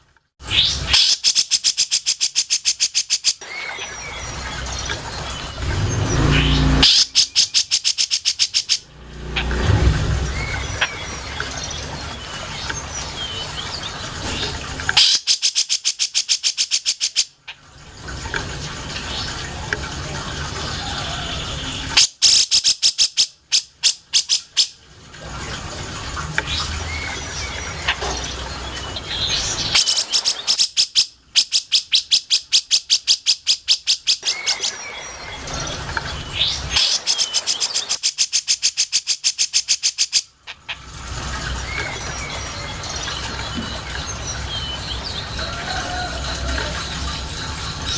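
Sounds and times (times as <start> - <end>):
bird harsh chattering: 6.4 - 8.8.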